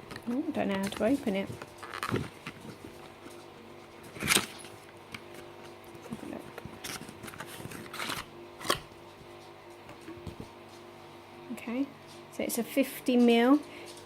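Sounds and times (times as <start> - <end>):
plastic container handling: 0.1 - 8.8.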